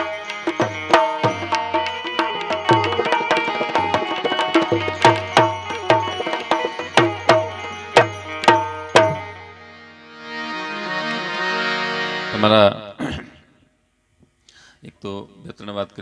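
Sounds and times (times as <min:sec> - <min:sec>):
tabla drumming: 0:00.0 - 0:09.5
sustained melody notes: 0:00.0 - 0:12.6.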